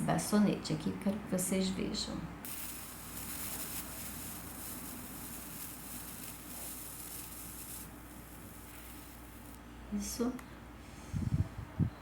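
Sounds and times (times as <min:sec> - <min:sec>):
lighter flame hissing: 0:02.4 - 0:09.7.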